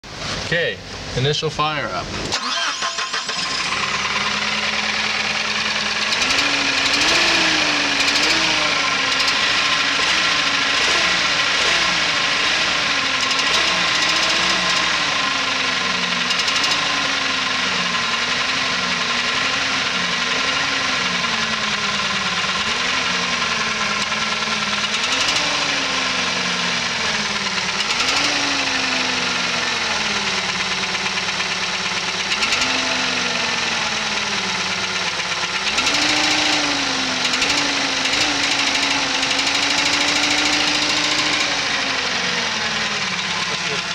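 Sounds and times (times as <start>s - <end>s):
engine running unevenly: 2.0s - 43.9s
rapid engine knock: 13.6s - 41.8s, 42.5s - 43.9s.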